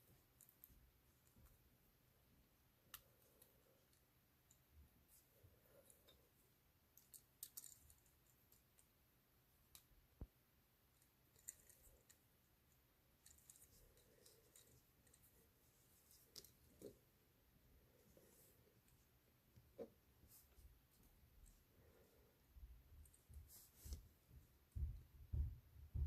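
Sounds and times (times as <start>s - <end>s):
tiny metal parts tapping: 7.0s - 8.4s.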